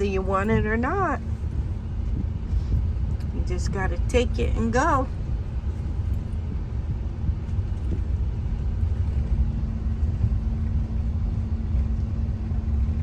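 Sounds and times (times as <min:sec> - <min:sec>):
car engine and tyres rumbling: 0:00.0 - 0:13.0
constant hum: 0:00.0 - 0:13.0.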